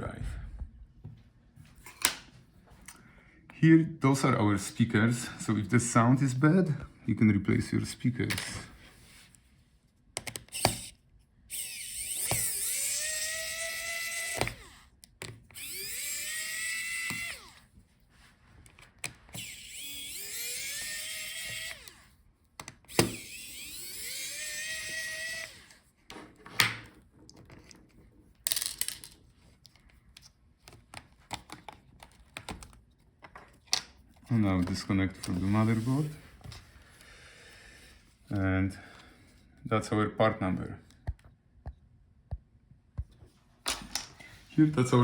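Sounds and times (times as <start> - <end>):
small parts clicking and tapping: 10.2 - 17.6, 27.2 - 33.9
electric screwdriver whining: 10.2 - 17.7, 18.8 - 22.2, 22.8 - 25.8.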